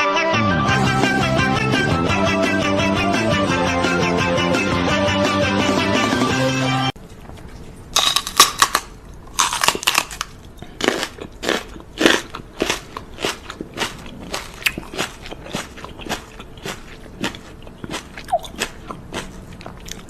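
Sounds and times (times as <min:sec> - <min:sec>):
music: 0:00.0 - 0:07.0
crunching chewing: 0:07.0 - 0:20.0.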